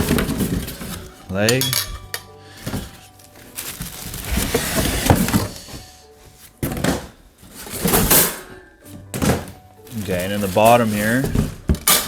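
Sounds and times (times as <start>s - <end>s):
rustling and scraping: 0.0s - 12.0s.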